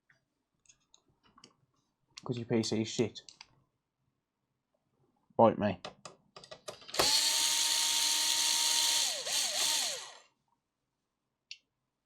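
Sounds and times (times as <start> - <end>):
small electric tool motor whining: 7.0 - 10.3.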